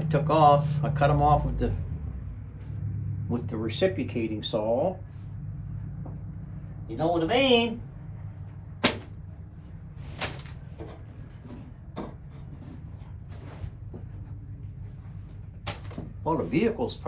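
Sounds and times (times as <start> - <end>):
hard objects knocking and clunking: 10.2 - 14.5.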